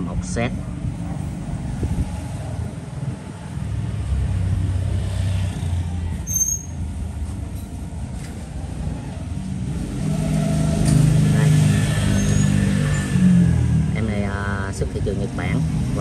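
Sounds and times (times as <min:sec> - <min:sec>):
brief high squeal: 0:06.2 - 0:06.8, 0:12.2 - 0:12.6.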